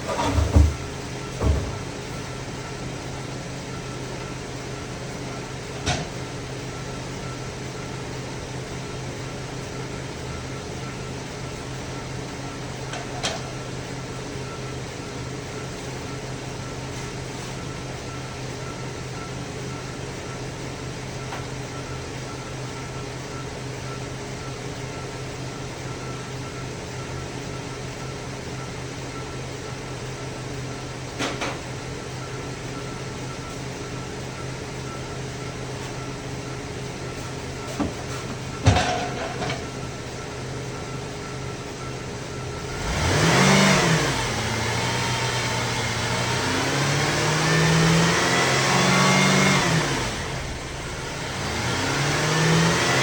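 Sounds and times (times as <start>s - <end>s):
car engine idling: 39.3s - 53.0s.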